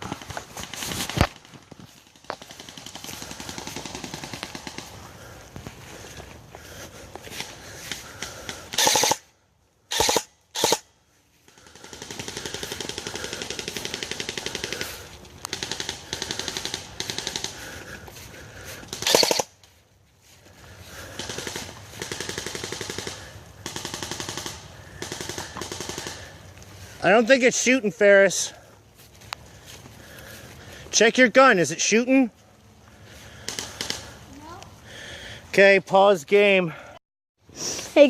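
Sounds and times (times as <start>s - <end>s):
airsoft rifles firing full-auto: 2.2s - 5.0s, 8.2s - 9.3s, 9.9s - 10.9s, 11.5s - 17.7s, 18.9s - 19.6s, 21.0s - 26.4s, 33.4s - 34.2s.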